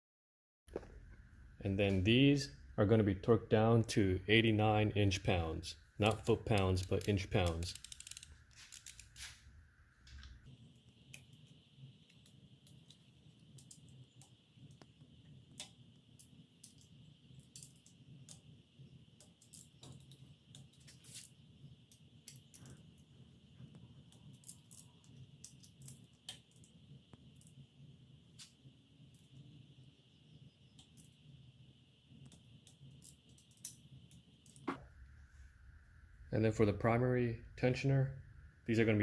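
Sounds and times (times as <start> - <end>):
faint high-pitched hum: 9.6 - 39.0.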